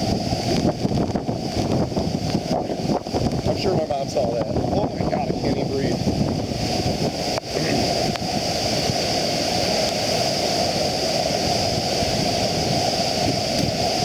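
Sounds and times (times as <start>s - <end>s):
floodwater crashing down: 0.0s - 14.0s.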